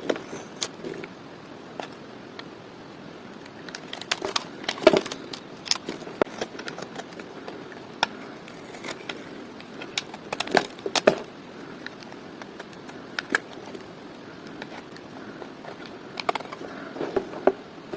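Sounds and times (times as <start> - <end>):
bar soap cracking and crunching: 3.4 - 16.8.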